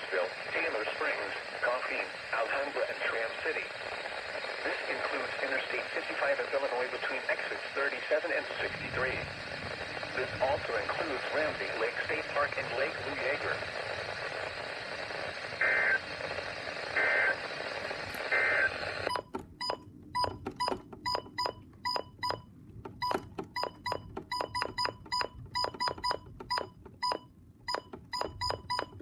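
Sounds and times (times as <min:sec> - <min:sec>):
radio static: 0:00.0 - 0:19.2
short electronic beeps: 0:19.1 - 0:22.4, 0:23.0 - 0:29.0.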